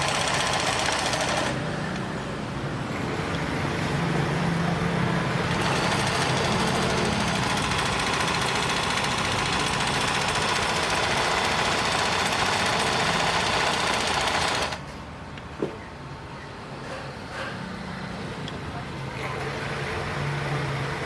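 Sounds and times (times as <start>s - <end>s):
sewing machine running: 0.0s - 2.0s, 4.7s - 14.8s.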